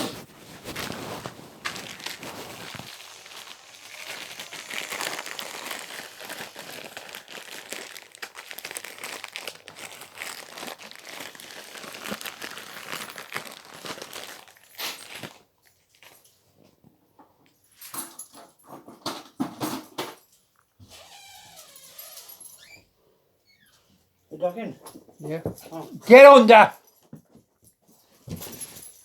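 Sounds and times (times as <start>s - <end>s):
crinkling and crumpling: 0.0s - 16.4s.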